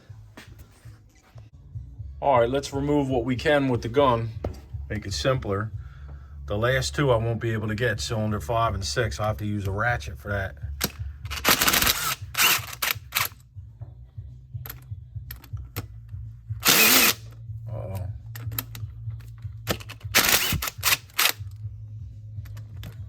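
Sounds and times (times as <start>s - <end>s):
low steady hum: 0.0s - 23.0s
impact gun spinning: 10.8s - 13.4s, 16.6s - 17.4s, 18.4s - 21.6s.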